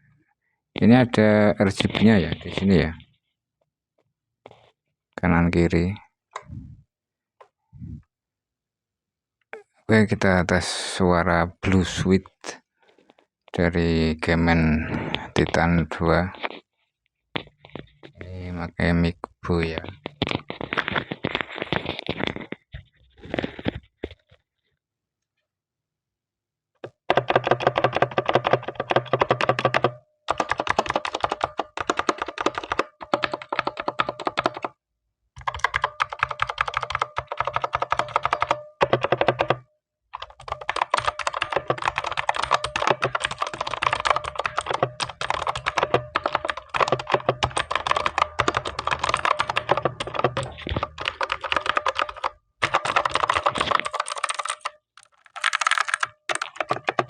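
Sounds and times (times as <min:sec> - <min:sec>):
clicky mechanical keyboard typing: 0:27.1 - 0:34.7, 0:35.4 - 0:39.6, 0:40.2 - 0:57.0.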